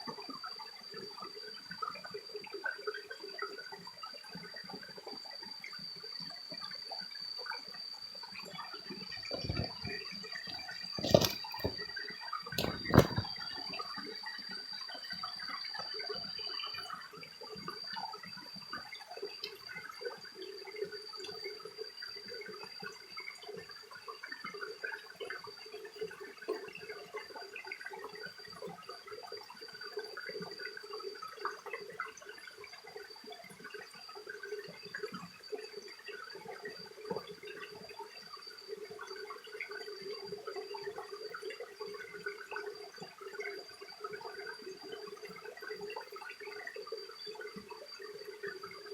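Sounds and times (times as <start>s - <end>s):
stream babbling over rocks: 9.2s - 11.9s, 12.6s - 13.4s.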